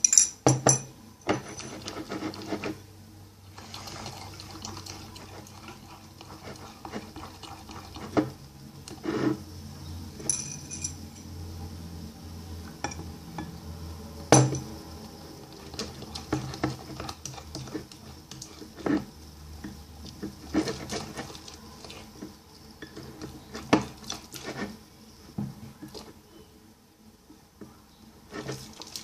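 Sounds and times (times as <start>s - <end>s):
spoon stirring wet slime: 1.2s - 2.8s, 3.5s - 9.4s, 15.5s - 24.8s, 28.3s - 29.0s.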